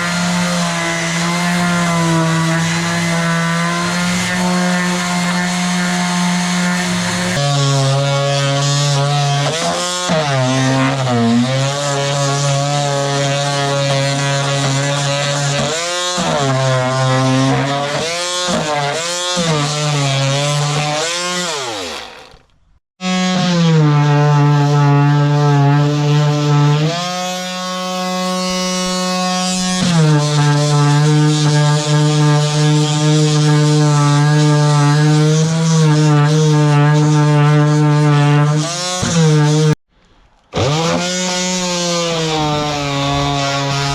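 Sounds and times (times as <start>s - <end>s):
electric power tool motor: 0.0s - 23.6s.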